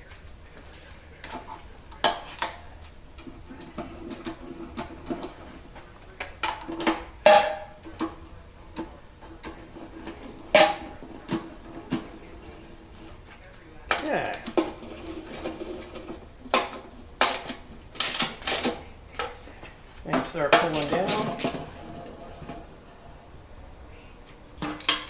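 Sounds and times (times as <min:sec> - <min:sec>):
tools clinking on metal: 0:16.5 - 0:22.7, 0:24.6 - 0:25.0.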